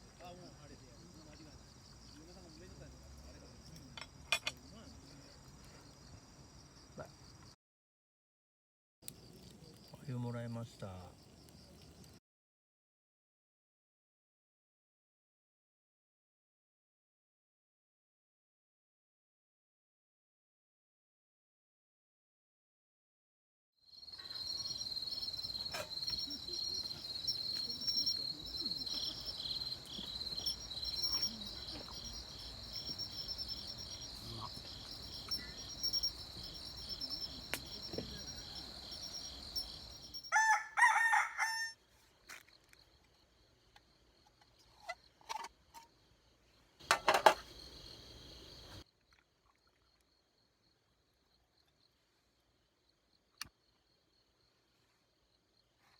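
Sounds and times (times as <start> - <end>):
insects chirping chorus: 0.0 - 7.6, 23.9 - 55.9.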